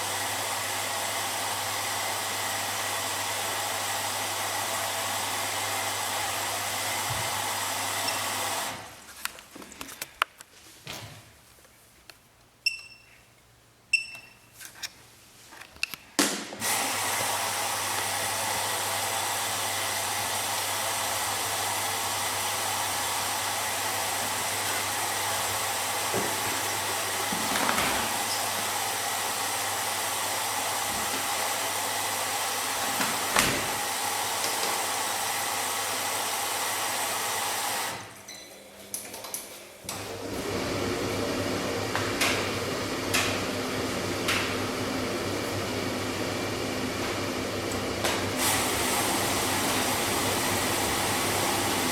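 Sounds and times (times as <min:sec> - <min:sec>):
water filling washing machine: 0:00.0 - 0:09.0, 0:16.6 - 0:51.9
short beeps: 0:12.6 - 0:13.3, 0:13.9 - 0:14.6.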